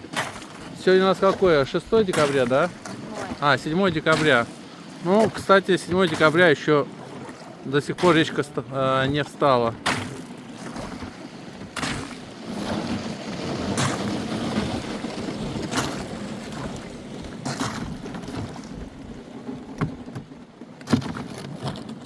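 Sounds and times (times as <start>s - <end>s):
boat swishing through water: 0.0s - 22.0s.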